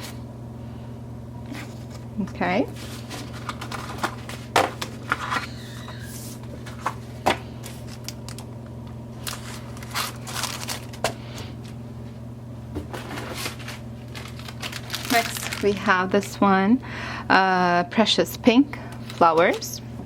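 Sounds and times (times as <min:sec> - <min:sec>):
plastic packaging rustling: 0:02.7 - 0:08.5, 0:09.1 - 0:11.8, 0:12.8 - 0:16.4, 0:18.9 - 0:19.8.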